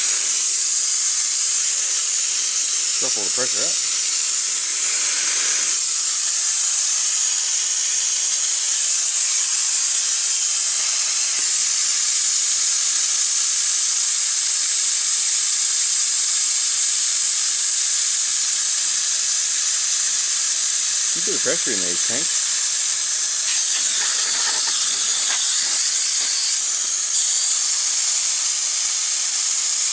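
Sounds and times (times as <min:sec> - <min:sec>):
compressed air hissing: 0:00.0 - 0:06.9, 0:20.8 - 0:27.8.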